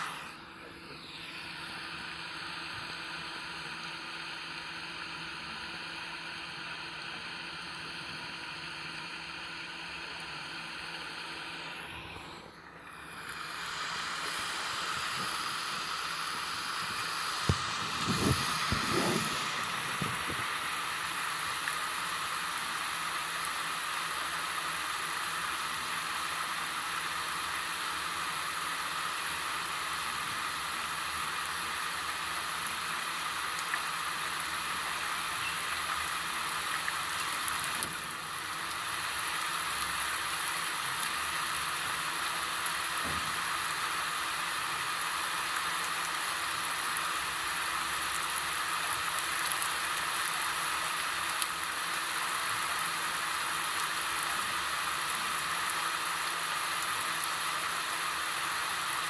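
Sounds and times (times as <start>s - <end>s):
steady rain falling: 13.0s - 59.0s.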